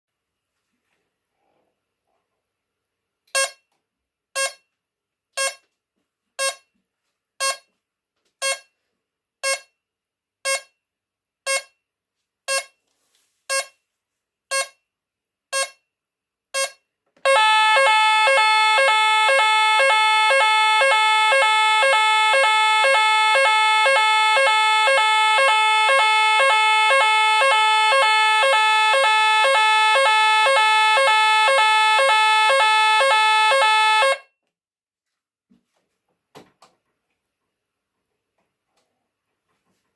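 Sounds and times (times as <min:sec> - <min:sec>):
fire alarm short beeps: 0:03.4 - 0:03.6, 0:04.4 - 0:04.7, 0:05.4 - 0:05.6, 0:07.4 - 0:07.7, 0:08.4 - 0:08.7, 0:09.4 - 0:09.7, 0:10.5 - 0:10.8, 0:11.5 - 0:11.8, 0:12.5 - 0:12.7, 0:14.5 - 0:14.8, 0:15.6 - 0:15.8, 0:16.6 - 0:34.3
two-note evacuation alarm tone: 0:17.3 - 0:34.3.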